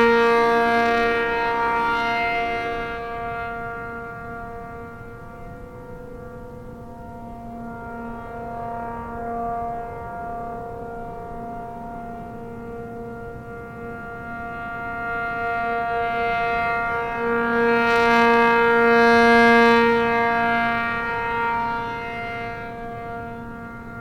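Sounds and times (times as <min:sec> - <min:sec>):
rotating warning siren: 0:00.0 - 0:24.0.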